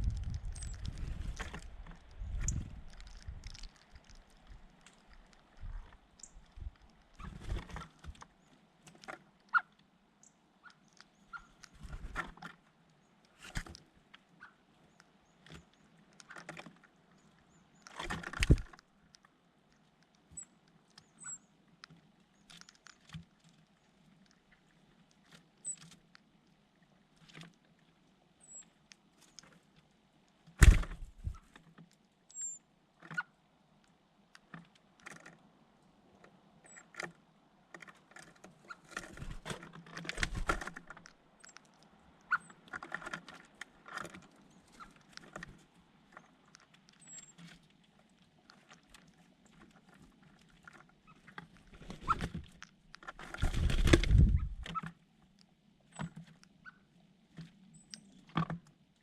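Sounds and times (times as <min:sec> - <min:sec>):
small birds tapping and scuffling: 0:00.0 - 0:59.0
faint high bird chirps: 0:09.5 - 0:11.8, 0:20.3 - 0:21.5, 0:28.4 - 0:28.7, 0:32.3 - 0:33.3, 0:47.0 - 0:47.4.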